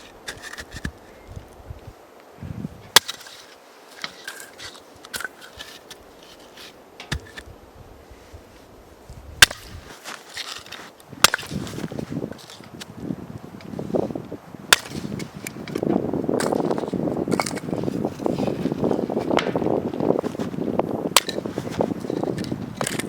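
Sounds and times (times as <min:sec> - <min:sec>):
axe splitting firewood: 0:00.0 - 0:01.0, 0:02.9 - 0:07.5, 0:09.4 - 0:12.8, 0:14.7 - 0:23.0.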